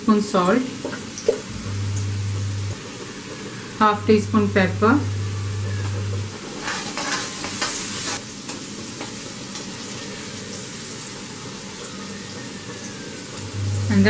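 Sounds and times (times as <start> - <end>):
vegetables sizzling in hot oil: 0.0 - 14.0
stirring in pan: 4.1 - 11.0.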